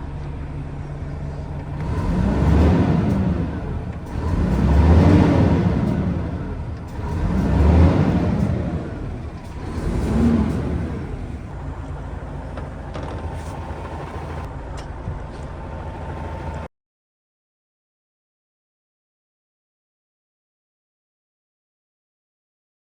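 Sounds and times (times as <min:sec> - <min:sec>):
diesel truck engine revving: 0:01.2 - 0:14.5.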